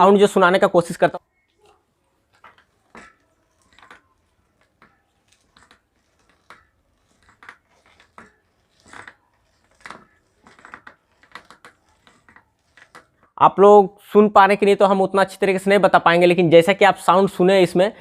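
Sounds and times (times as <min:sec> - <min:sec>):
bicycle fork creaks and clicks: 0:00.0 - 0:13.4.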